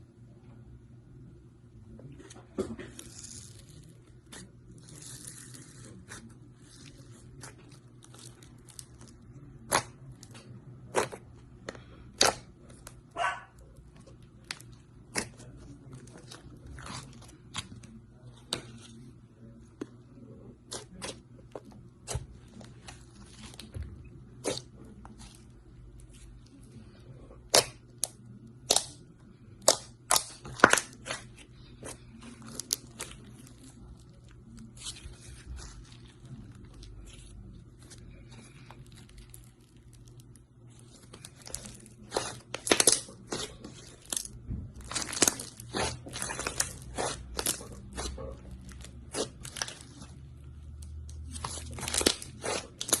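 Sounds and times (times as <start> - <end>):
slime popping and crackling: 29.6 - 31.2, 38.8 - 50.1, 51.1 - 53.0.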